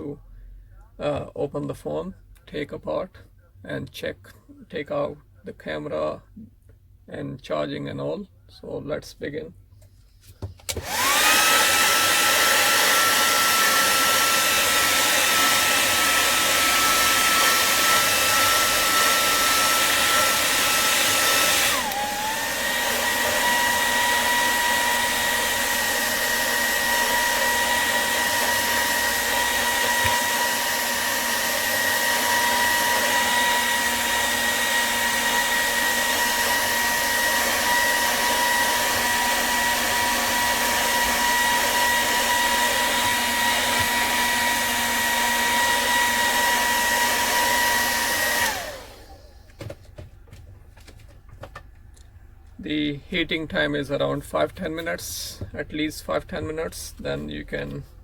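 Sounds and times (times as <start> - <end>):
hot-air blower whining: 10.6 - 49.8.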